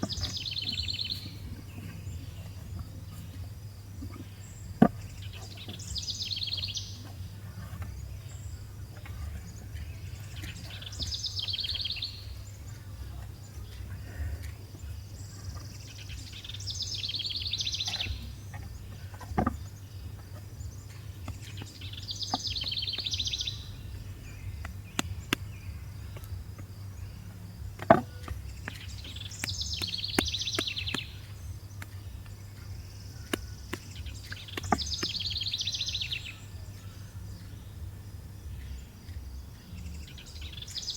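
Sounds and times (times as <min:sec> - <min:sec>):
steady low hum: 0:00.0 - 0:40.9
bird trilled call: 0:04.0 - 0:37.7.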